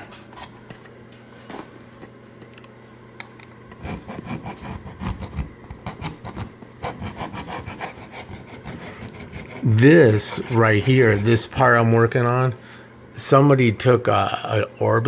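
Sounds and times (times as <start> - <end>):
hand file rasping on filler: 3.8 - 11.6.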